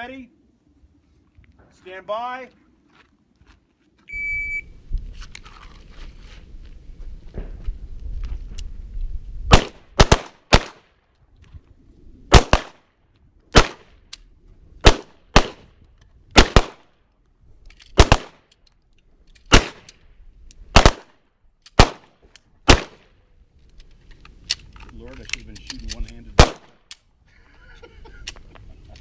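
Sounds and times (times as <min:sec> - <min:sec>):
pistol shots: 0:09.5 - 0:10.8, 0:12.3 - 0:12.8, 0:13.5 - 0:13.9, 0:14.8 - 0:15.7, 0:16.4 - 0:16.9, 0:18.0 - 0:18.4, 0:19.5 - 0:19.9, 0:20.7 - 0:21.2, 0:21.8 - 0:23.1, 0:26.4 - 0:26.9.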